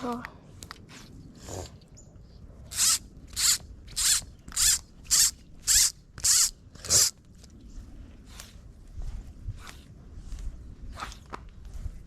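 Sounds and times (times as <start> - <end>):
fly reel ratchet buzzing: 2.7 - 7.1.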